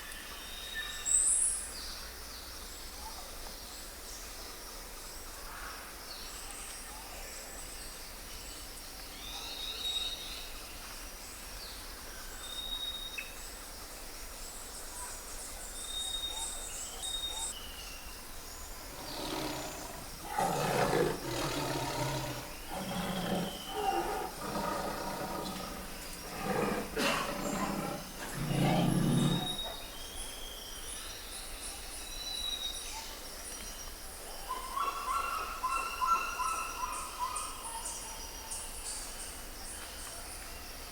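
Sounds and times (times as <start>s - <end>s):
tiger growling and roaring: 18.7s - 29.8s.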